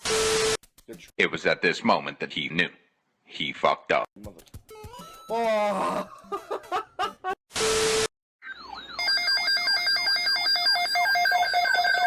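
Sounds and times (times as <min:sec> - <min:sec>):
electronic alarm ringtone: 0:08.4 - 0:12.0.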